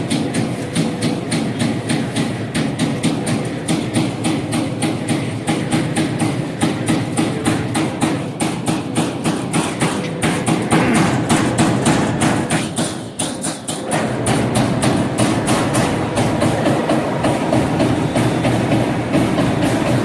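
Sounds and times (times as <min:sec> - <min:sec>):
machine hum: 0:10.6 - 0:12.5, 0:13.8 - 0:20.0.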